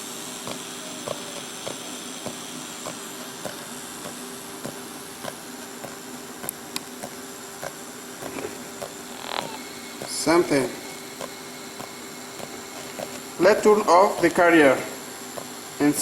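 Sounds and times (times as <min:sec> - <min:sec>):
radio static hiss and hum: 0:06.7 - 0:16.0.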